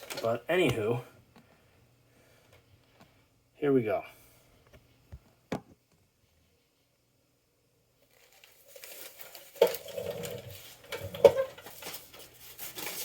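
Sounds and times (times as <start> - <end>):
plastic packaging crinkling: 8.0 - 13.0.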